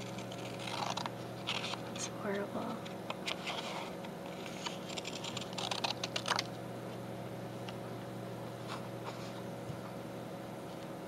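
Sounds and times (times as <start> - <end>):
low steady hum: 0.0 - 11.0
scissors snipping thick paper: 4.4 - 6.4.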